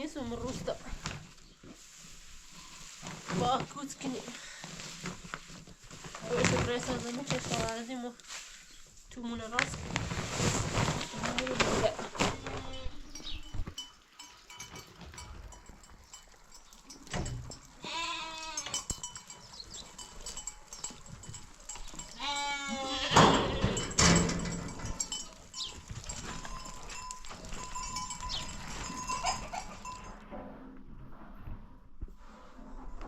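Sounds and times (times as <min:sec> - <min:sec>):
animals bleating: 0:17.8 - 0:18.9, 0:21.9 - 0:24.0.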